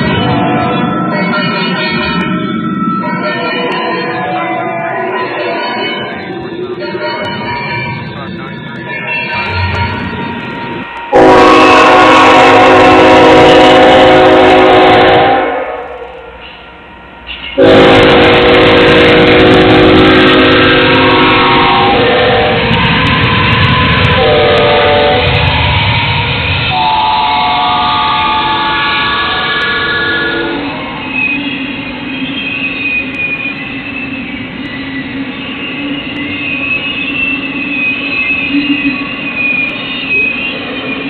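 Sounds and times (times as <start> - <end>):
train rumbling: 0.0 - 41.0
locomotive air horn: 9.3 - 16.4, 17.2 - 22.8, 23.8 - 25.8, 26.7 - 30.8.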